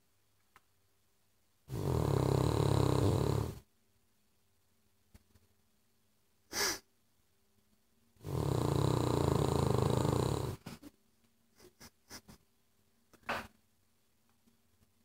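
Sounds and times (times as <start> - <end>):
dog snoring: 1.7 - 3.6, 8.2 - 10.6.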